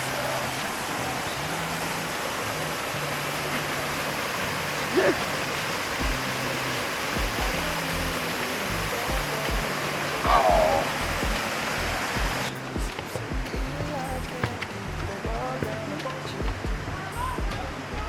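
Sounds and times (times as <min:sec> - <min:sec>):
waterfall rushing: 0:00.0 - 0:18.0
music with stepping bass line: 0:06.0 - 0:18.0.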